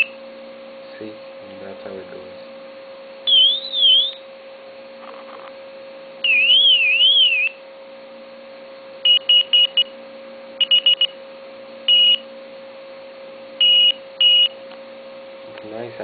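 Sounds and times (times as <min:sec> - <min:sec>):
faint steady hum: 0:00.0 - 0:16.0
warbling whistle tone: 0:03.3 - 0:04.2, 0:06.2 - 0:07.6
longer beep: 0:09.1 - 0:09.9, 0:10.6 - 0:11.1, 0:11.9 - 0:12.2, 0:13.6 - 0:14.5.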